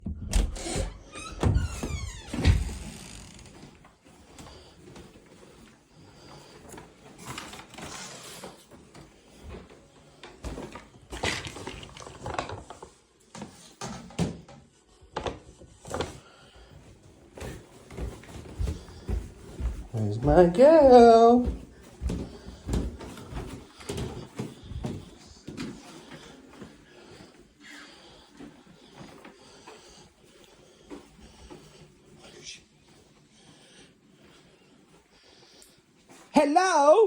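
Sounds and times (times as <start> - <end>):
door creak: 0.0 - 3.6.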